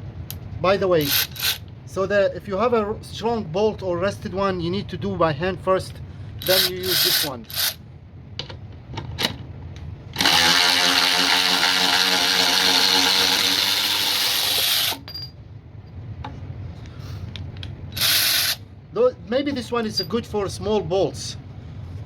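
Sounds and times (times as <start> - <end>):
electric ratchet whine: 10.1 - 15.1, 17.9 - 18.6.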